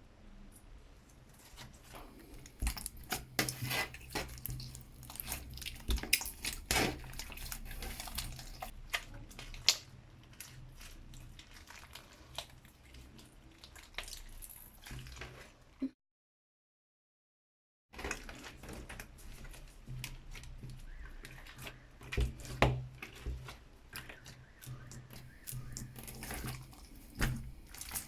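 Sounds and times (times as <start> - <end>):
slime squelching: 2.0 - 15.5, 23.1 - 28.0.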